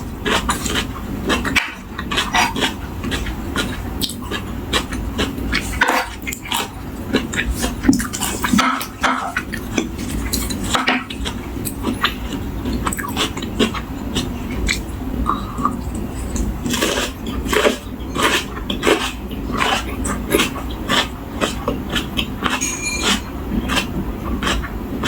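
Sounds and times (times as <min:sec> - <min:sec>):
crunchy chewing: 0:00.0 - 0:25.0
cutlery clinking on plate: 0:22.4 - 0:23.3.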